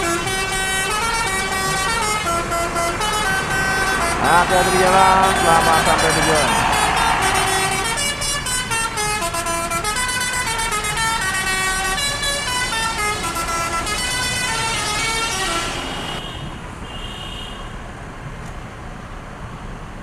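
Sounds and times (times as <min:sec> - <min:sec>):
low engine rumble: 0:00.0 - 0:08.5
multi-tone air horn melody: 0:00.0 - 0:16.3
traffic: 0:00.0 - 0:20.0.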